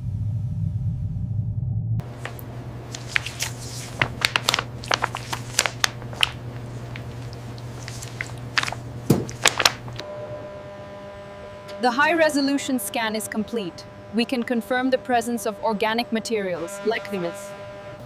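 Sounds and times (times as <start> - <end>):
low rumble: 0.0 - 2.0
steady low hum: 0.0 - 18.0
crunches and crackles: 2.0 - 10.0.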